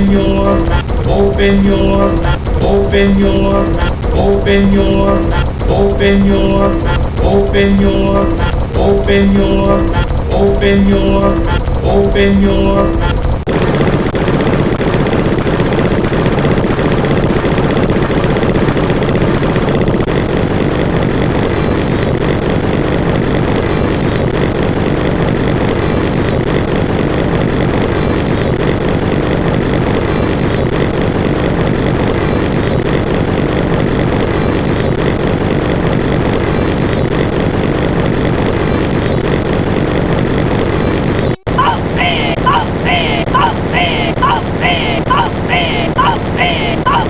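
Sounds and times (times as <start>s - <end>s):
loud low droning noise: 0.0s - 47.0s.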